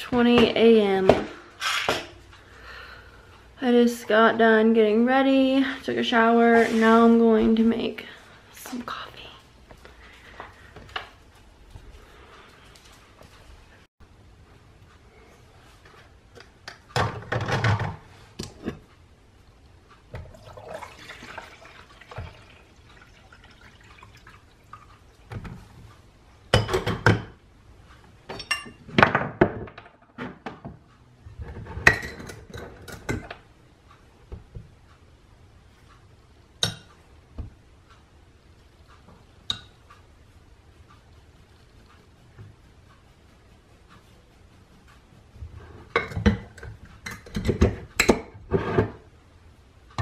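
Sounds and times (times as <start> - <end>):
liquid pouring: 20.2 - 25.3
dishes clinking: 28.3 - 28.9, 31.6 - 33.3.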